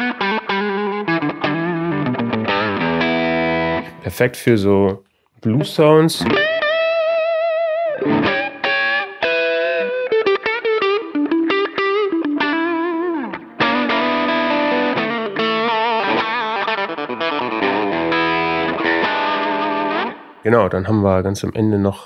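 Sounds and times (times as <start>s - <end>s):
overdriven electric guitar: 0.0s - 4.0s, 6.2s - 20.5s.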